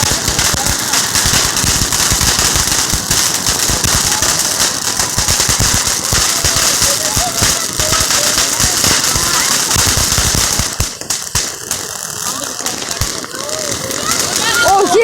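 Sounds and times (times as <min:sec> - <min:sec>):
firework crackling pops: 0:00.0 - 0:15.0
firework hiss: 0:00.0 - 0:15.0.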